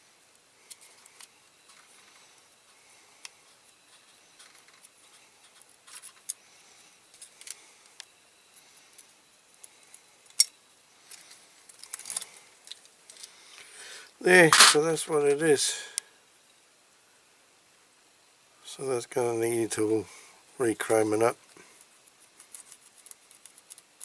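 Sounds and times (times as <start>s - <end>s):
loud click: 14.4s - 14.9s
tools clicking on toy car parts: 14.5s - 14.8s.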